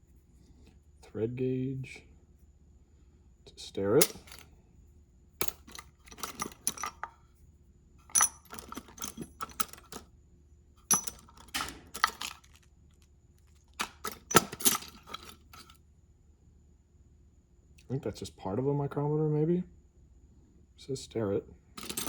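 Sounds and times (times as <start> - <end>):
metal tools clinking in a drawer: 4.0 - 4.5, 5.4 - 7.2, 8.1 - 10.1, 10.9 - 12.7, 13.6 - 15.8, 21.8 - 22.0.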